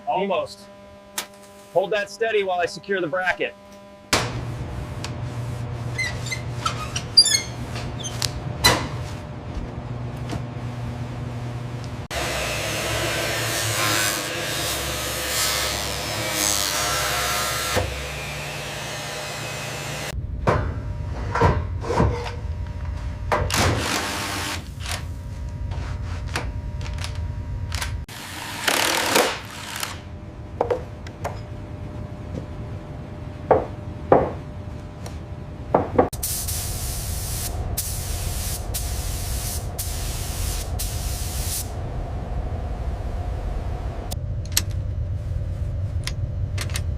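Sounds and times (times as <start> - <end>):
low machinery hum: 0.0 - 28.2, 29.0 - 46.9
hissing bursts: 36.2 - 41.8.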